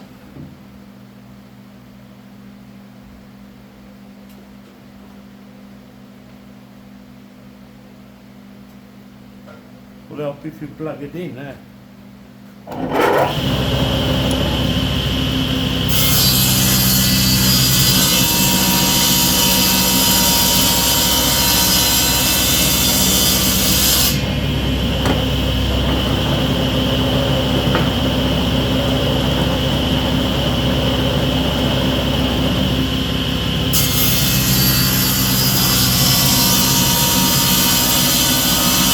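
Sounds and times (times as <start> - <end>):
table saw motor hum: 12.7 - 38.9.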